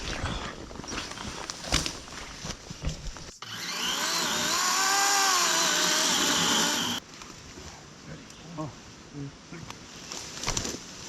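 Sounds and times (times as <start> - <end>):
battery chainsaw whining: 3.4 - 7.0.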